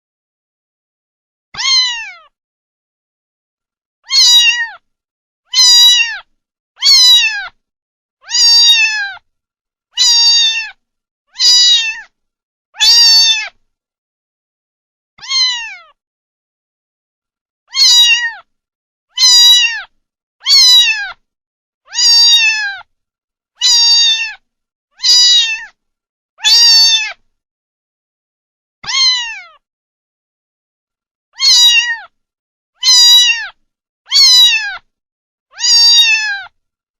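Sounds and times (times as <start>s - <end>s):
kitten meowing: 1.6s - 2.3s, 4.0s - 4.8s, 5.5s - 7.6s, 8.2s - 9.2s, 10.0s - 12.1s, 12.8s - 13.6s, 15.2s - 16.0s, 17.7s - 18.5s, 19.1s - 21.2s, 21.9s - 22.9s, 23.6s - 24.4s, 25.0s - 25.8s, 26.4s - 27.2s, 28.8s - 29.6s, 31.4s - 32.1s, 32.8s - 34.9s, 35.5s - 36.6s.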